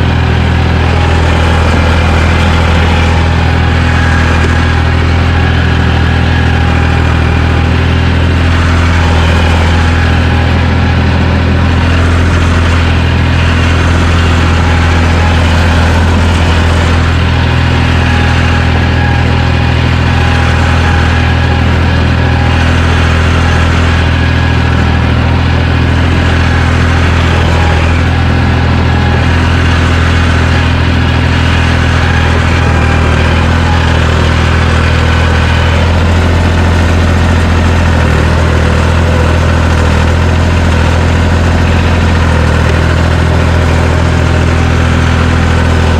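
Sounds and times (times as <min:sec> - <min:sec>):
dozer engine running: 0:00.0 - 0:45.9.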